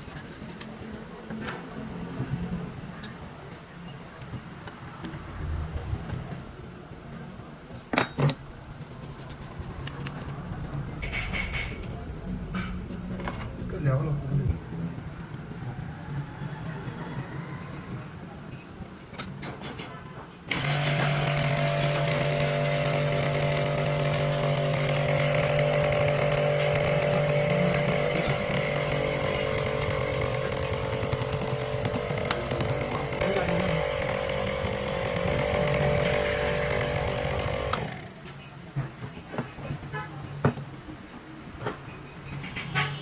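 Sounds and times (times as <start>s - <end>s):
power tool running: 20.5s - 38.2s.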